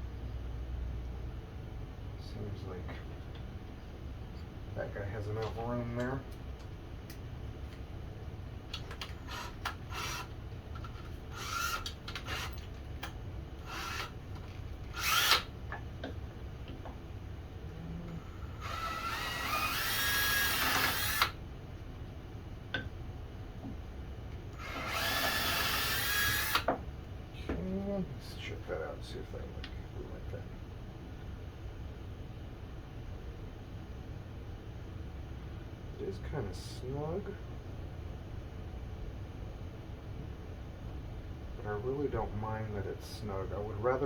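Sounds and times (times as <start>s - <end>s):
steady low hum: 0.0s - 44.0s
power drill whining: 9.2s - 10.3s, 11.3s - 12.6s, 13.6s - 14.2s, 14.9s - 15.5s, 18.4s - 21.3s, 24.6s - 26.7s.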